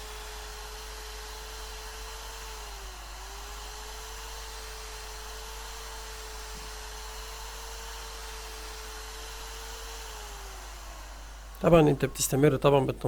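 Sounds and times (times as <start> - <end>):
electric drill whining: 0.0 - 12.9.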